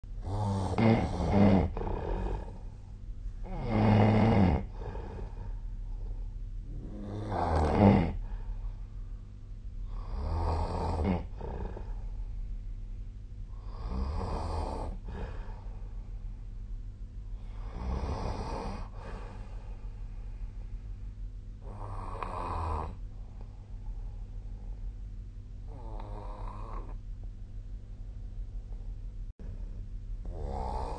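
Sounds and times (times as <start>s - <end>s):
steady low hum: 0.0s - 30.9s
person snoring: 0.2s - 2.8s, 3.4s - 8.7s, 9.8s - 12.2s, 13.5s - 15.9s, 17.4s - 19.8s, 21.6s - 23.4s, 25.7s - 27.0s, 30.2s - 30.9s.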